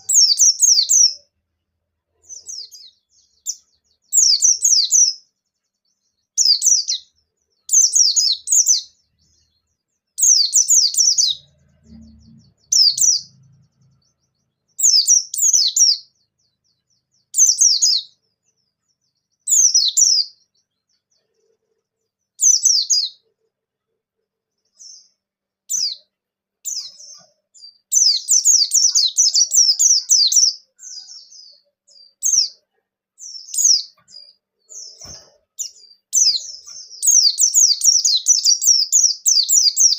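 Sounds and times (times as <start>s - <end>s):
bird twittering song: 0.0s - 23.5s, 24.4s - 39.9s.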